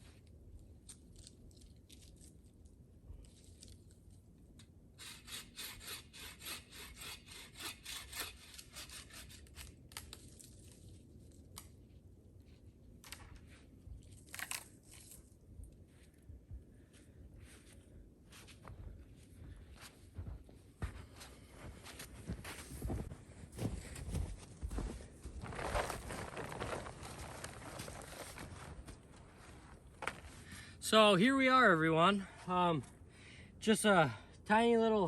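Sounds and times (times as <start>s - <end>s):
hand saw cutting wood: 5.0s - 9.7s.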